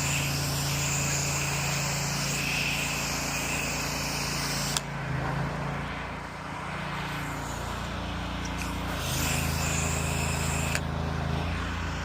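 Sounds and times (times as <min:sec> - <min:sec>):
water spray hissing: 0:00.0 - 0:04.8, 0:07.0 - 0:10.8
pressure washer engine running: 0:00.0 - 0:12.0.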